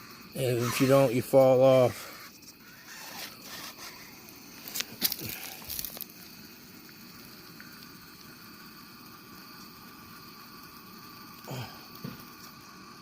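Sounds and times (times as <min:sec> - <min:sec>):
faint steady hiss: 0:00.0 - 0:13.0
toy car tires clicking on rock: 0:04.6 - 0:06.2.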